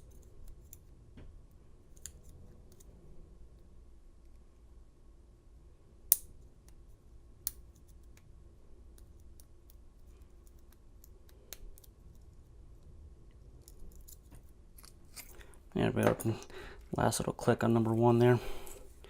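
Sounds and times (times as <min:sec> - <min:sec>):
lock pick clicks and scrapes: 0:13.6 - 0:15.5.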